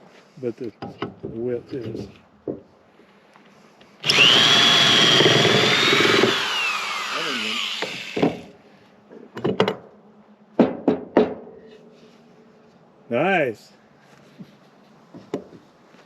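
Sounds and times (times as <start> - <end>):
electric drill boring into wood: 4.0 - 8.5.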